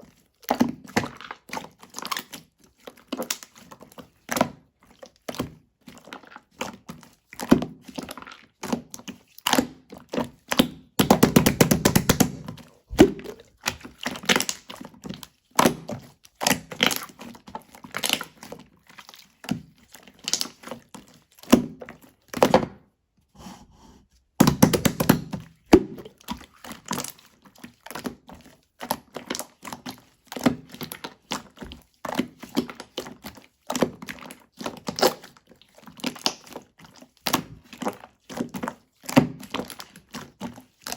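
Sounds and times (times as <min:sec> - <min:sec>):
slime rapid crackling: 0:11.0 - 0:13.4, 0:24.4 - 0:25.3.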